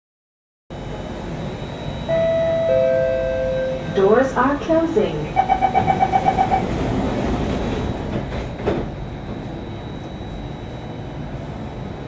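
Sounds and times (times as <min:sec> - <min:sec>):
train doors thudding shut: 0:05.3 - 0:09.6.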